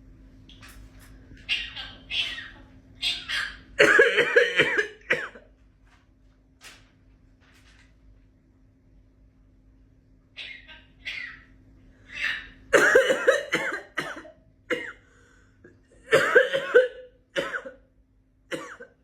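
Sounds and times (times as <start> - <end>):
parrot imitating coughing: 1.6 - 5.5, 12.1 - 15.0, 16.0 - 17.8, 18.5 - 19.0.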